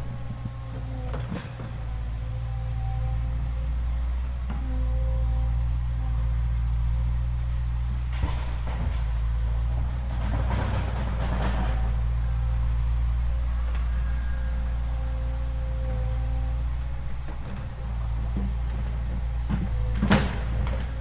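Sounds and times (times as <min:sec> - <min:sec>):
rattling clatter: 0:07.2 - 0:21.0.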